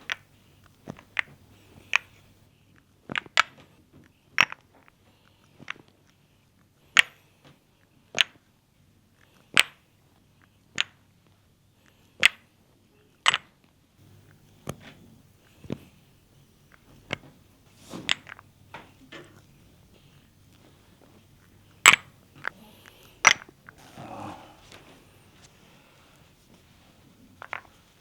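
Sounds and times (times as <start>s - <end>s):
hands smacking on body: 21.9s - 26.8s.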